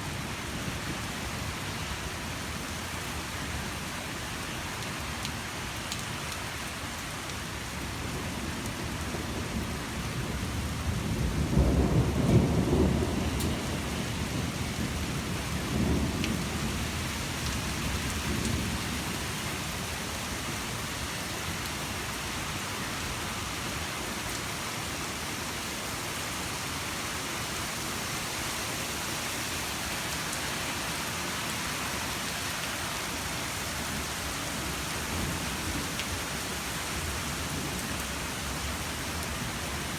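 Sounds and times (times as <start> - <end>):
steady rain falling: 0.0 - 39.9
thunder rumbling: 10.8 - 17.1.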